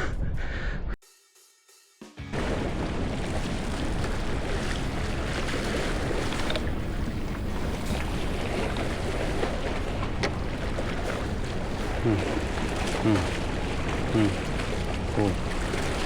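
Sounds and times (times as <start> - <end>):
sea at the shore: 2.3 - 16.0
faint clicks: 6.3 - 6.7.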